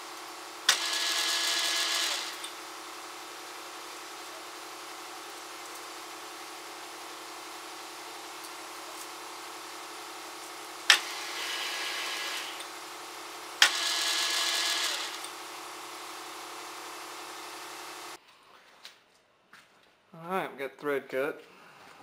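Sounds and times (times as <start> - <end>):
metal lathe running: 0.3 - 18.2.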